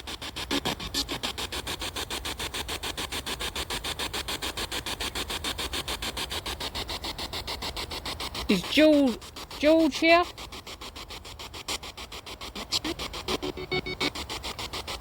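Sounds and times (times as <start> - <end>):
chopping radio static: 8.5 - 10.2, 12.6 - 14.2.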